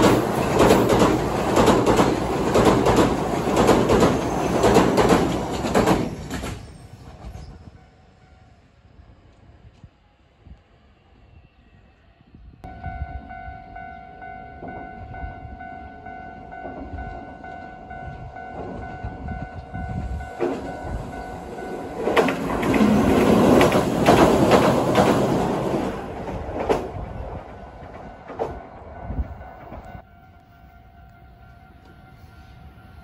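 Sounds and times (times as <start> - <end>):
train passing: 0.0 - 33.0
wheels clattering over rail joints: 20.3 - 28.9.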